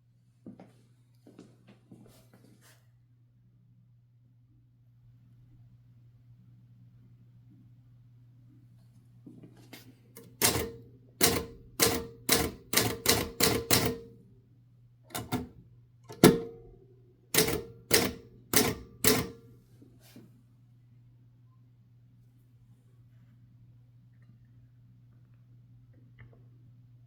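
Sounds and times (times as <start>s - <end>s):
typewriter keys clacking: 10.2s - 14.0s, 15.1s - 15.5s, 17.4s - 19.4s.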